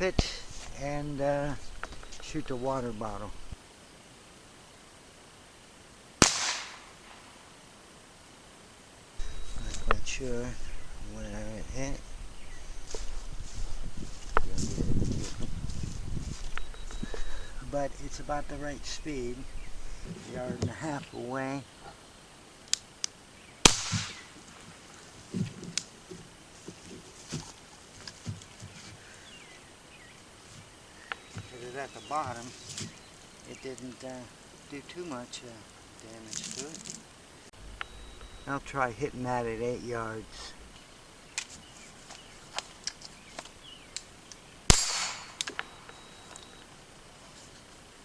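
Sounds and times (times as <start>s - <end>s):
pistol shot: 6.2s - 7.3s, 23.6s - 24.3s, 44.7s - 45.7s.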